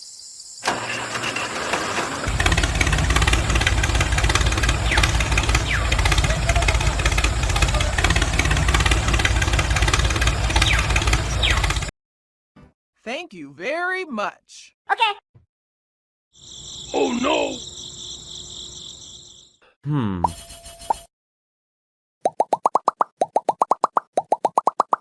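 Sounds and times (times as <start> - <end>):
motor running with low pulsing: 2.3 - 11.9.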